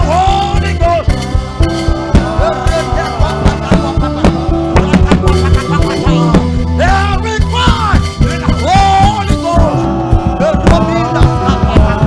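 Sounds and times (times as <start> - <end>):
gospel band music: 0.0 - 12.0
people singing: 1.2 - 7.0, 8.2 - 12.0.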